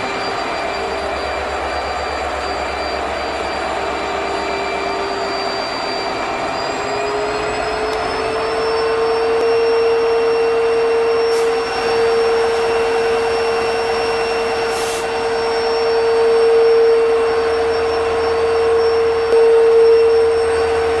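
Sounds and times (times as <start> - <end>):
locomotive engine whine: 0.0 - 21.0
brief hisses: 14.7 - 15.1.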